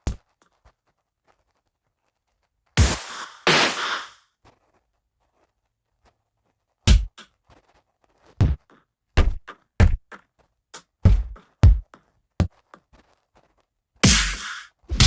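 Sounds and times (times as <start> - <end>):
thudding punch impacts: 14.0 - 15.0.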